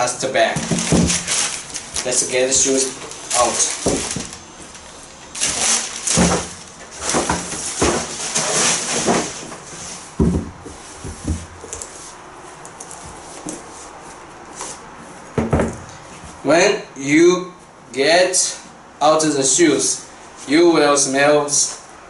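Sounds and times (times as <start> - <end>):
paper and cloth bags rustling: 0.4 - 10.1.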